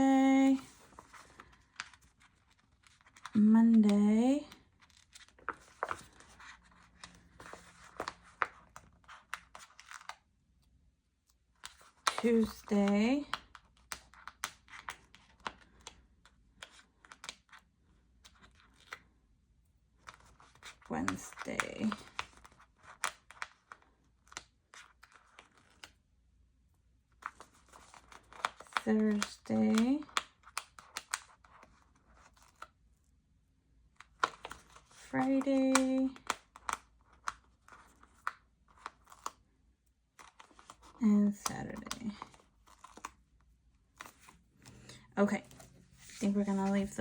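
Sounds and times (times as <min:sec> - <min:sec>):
paper stickers rustling and crinkling: 0:00.0 - 0:10.6, 0:11.3 - 0:19.1, 0:19.9 - 0:26.0, 0:27.1 - 0:33.0, 0:33.9 - 0:47.0
paper rustling: 0:04.5 - 0:10.2, 0:40.2 - 0:47.0.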